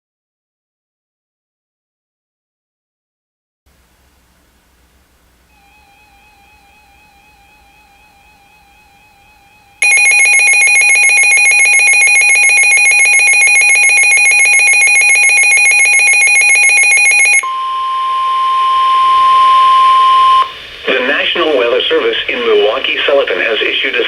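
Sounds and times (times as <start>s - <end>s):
steady warning alarm tone: 5.6s - 20.6s
rapidly pulsing alarm beep: 9.8s - 20.5s
receiver hiss: 16.8s - 24.0s.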